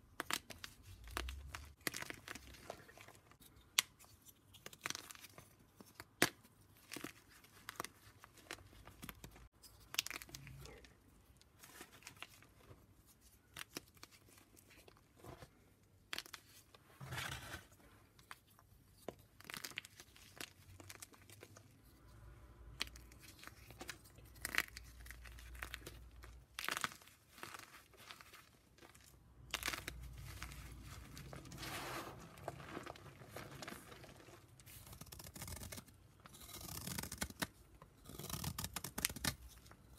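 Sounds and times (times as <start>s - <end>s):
chalk crackling and crunching: 22.8s - 39.9s.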